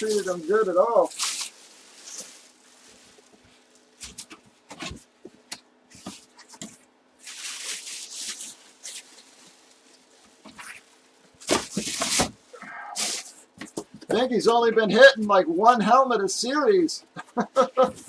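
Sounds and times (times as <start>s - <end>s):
soft rustling: 0.0s - 13.9s.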